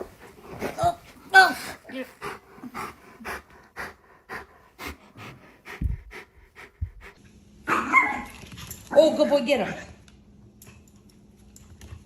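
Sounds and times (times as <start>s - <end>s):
dog panting: 0.0s - 7.2s.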